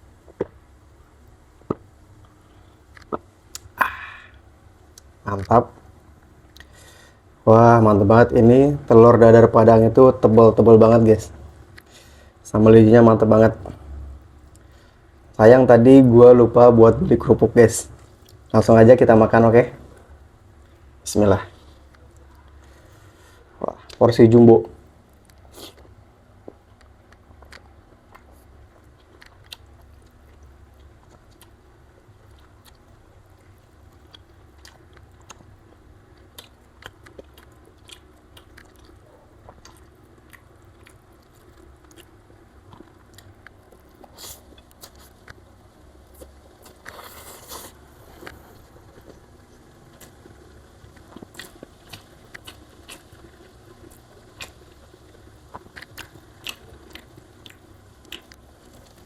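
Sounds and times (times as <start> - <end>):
person chewing food: 25.1 - 45.5, 46.1 - 59.0.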